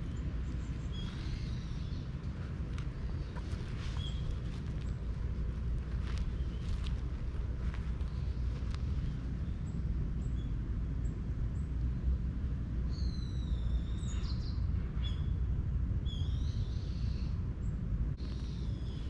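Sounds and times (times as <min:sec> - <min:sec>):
high falling bird calls: 0:00.0 - 0:05.1
low outdoor rumble: 0:00.0 - 0:19.0.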